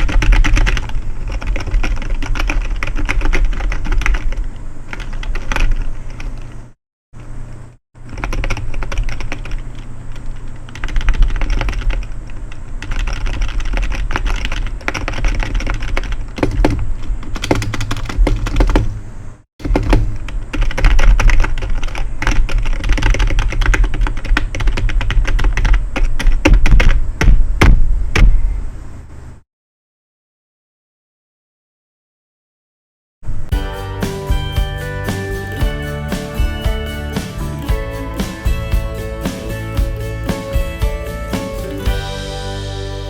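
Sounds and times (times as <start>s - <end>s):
fast keyboard typing: 0.0s - 6.5s, 8.0s - 19.0s, 19.6s - 27.4s
steady low hum: 33.5s - 43.0s.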